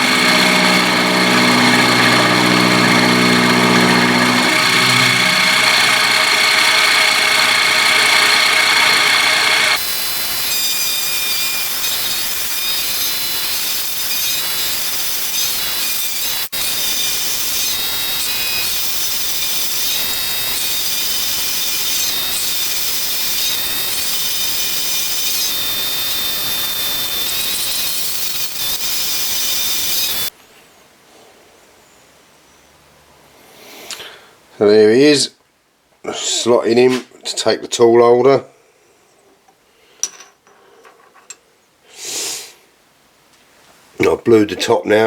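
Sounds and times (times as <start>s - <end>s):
milling machine cutting steel: 0.0s - 30.3s.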